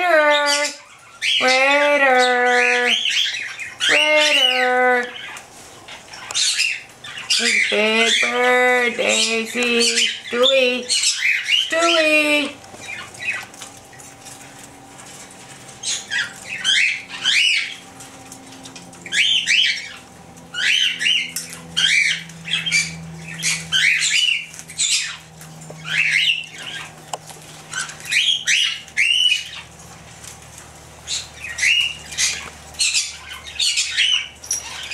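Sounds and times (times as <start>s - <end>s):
cockatiels squawking and chirping: 0.0s - 34.9s.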